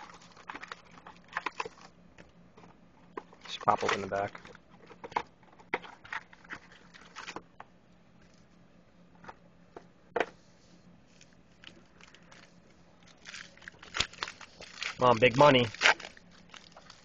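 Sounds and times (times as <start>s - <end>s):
cardboard and wrappers rustling: 0.0s - 1.9s, 3.1s - 7.4s, 11.1s - 17.0s.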